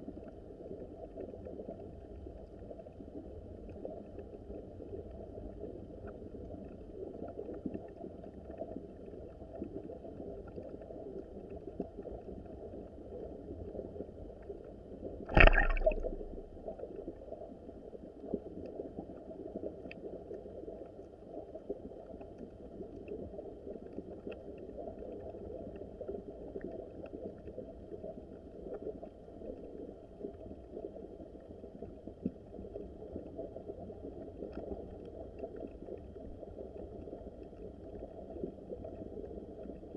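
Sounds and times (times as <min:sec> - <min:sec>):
muffled stream gurgling: 0:15.2 - 0:18.3
loud thump: 0:15.3 - 0:16.4.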